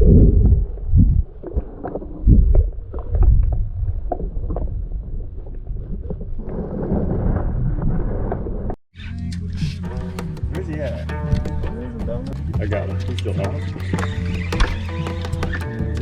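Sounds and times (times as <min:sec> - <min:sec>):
steady low rumble: 0:00.0 - 0:13.2
irregular knocks: 0:09.9 - 0:16.0.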